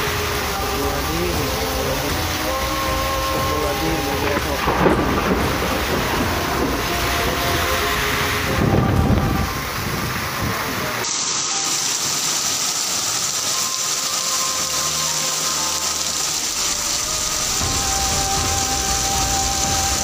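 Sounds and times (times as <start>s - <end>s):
heavy rain pouring: 0.0s - 20.0s.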